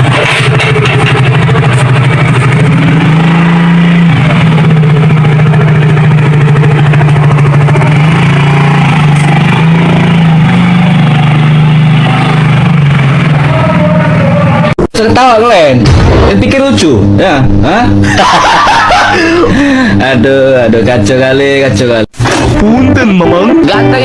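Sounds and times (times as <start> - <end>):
motorcycle engine running loudly: 0.0 - 14.8.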